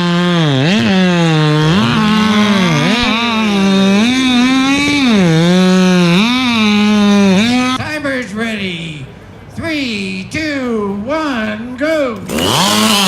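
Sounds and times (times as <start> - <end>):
chainsaw cutting through log: 0.0 - 7.8, 12.2 - 13.0.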